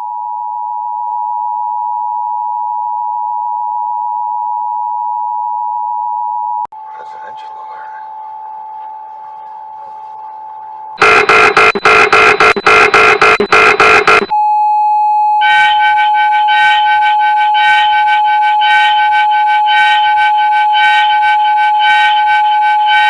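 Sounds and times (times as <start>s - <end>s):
harsh electronic alarm bursts: 11.0s - 14.3s, 15.4s - 23.0s
higher pulsing beeps: 11.0s - 14.3s
steady alert tone: 11.0s - 14.3s.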